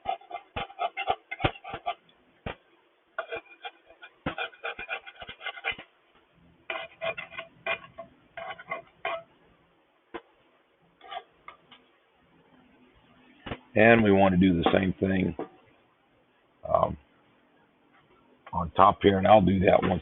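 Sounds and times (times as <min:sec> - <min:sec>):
scraper scraping metal surface: 0:00.0 - 0:02.0, 0:03.2 - 0:05.9, 0:06.7 - 0:09.3, 0:11.0 - 0:11.3.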